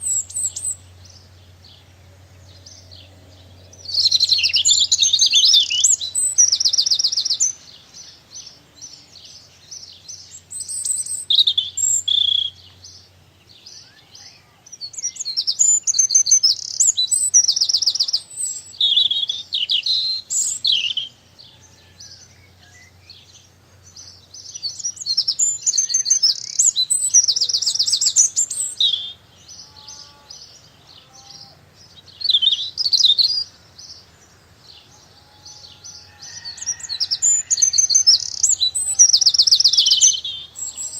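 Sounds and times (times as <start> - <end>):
small birds singing and chirping: 0.0 - 40.9.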